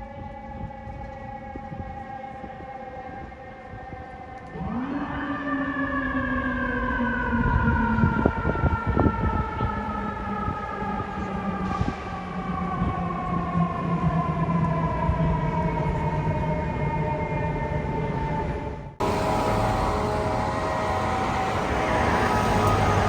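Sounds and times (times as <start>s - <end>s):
fire truck siren winding down: 19.0s - 23.0s
low steady drone: 19.0s - 23.0s.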